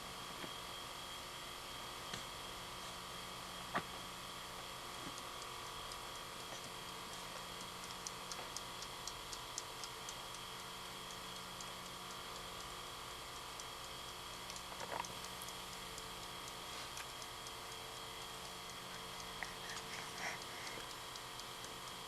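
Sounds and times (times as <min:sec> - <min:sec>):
kitchen timer ticking: 0:04.7 - 0:22.0.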